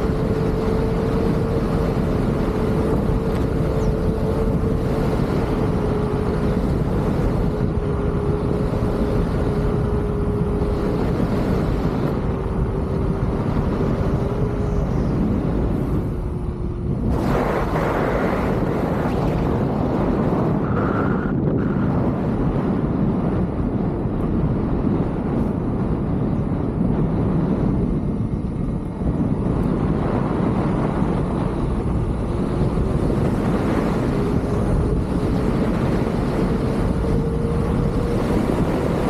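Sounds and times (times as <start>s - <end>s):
electric wheel whine: 0.0s - 21.4s
wind rushing over microphone: 0.0s - 39.0s.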